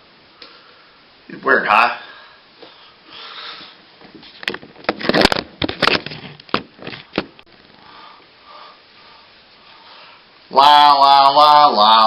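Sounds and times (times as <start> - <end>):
soft hiss: 0.0 - 4.5, 7.0 - 10.6.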